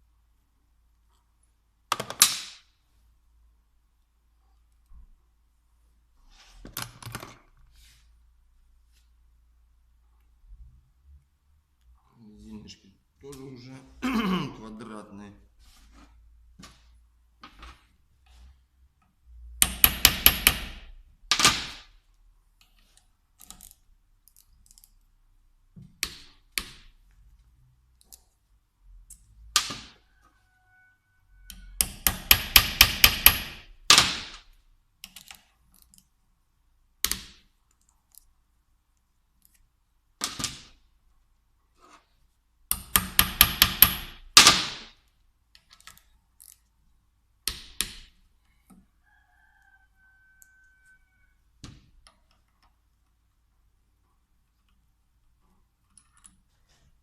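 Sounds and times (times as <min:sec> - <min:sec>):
tools knocking: 0:42.7 - 0:44.2.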